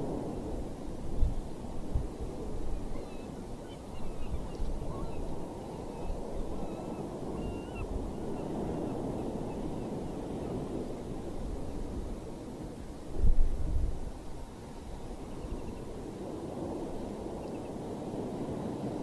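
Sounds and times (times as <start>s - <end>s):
sea surf: 0.0s - 19.0s
wind: 0.0s - 19.0s
faint bird calls: 2.7s - 10.6s.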